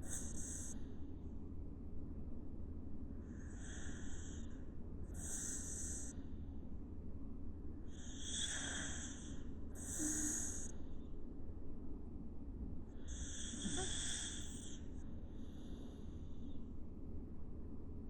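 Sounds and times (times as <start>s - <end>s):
steady low hum: 0.0s - 18.0s
dog snoring softly: 3.3s - 6.2s, 7.9s - 10.8s, 13.0s - 16.2s.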